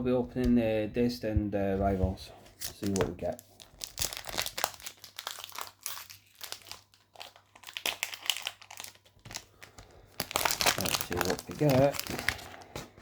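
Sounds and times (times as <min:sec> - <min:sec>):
foil wrapper crinkling and tearing: 0:02.6 - 0:12.8.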